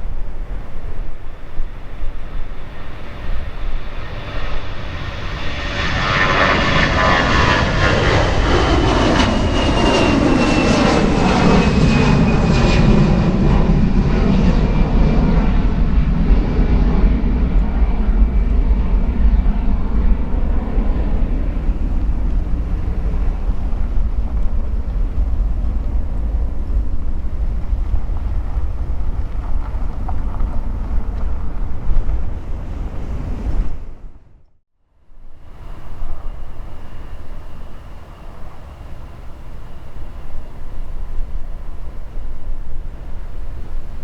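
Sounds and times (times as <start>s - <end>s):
low rumble: 0.0s - 34.6s
jet passing with whine: 0.0s - 44.0s.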